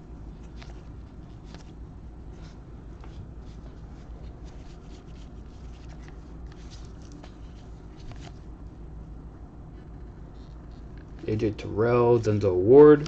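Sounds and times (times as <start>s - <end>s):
steady low hum: 0.0s - 13.0s
cards sliding and flipping: 2.4s - 8.4s.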